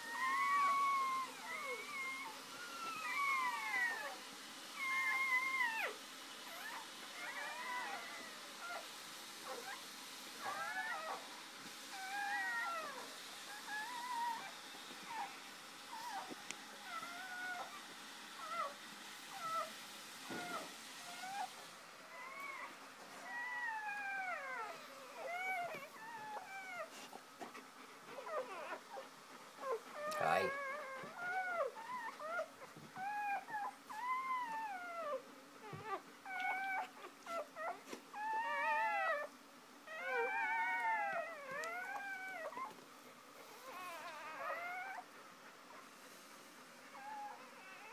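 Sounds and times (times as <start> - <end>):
puppies squeaking and whimpering: 40.0 - 42.7.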